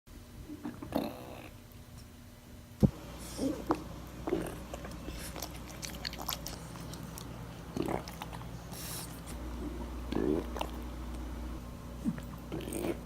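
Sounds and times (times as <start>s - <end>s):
dog chewing wet clicks: 3.7s - 9.3s.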